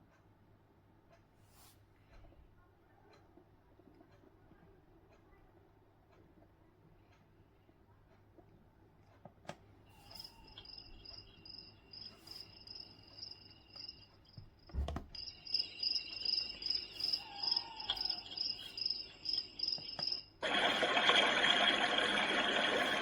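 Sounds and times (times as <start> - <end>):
cricket chirping through speaker: 10.0 - 23.0.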